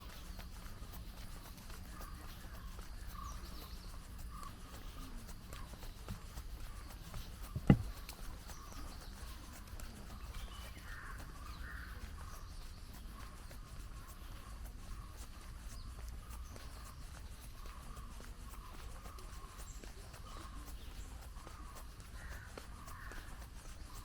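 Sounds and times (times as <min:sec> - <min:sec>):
birds chirping: 0:00.0 - 0:24.0
footsteps on pavement: 0:00.0 - 0:24.0
sharp knock: 0:07.6 - 0:07.9.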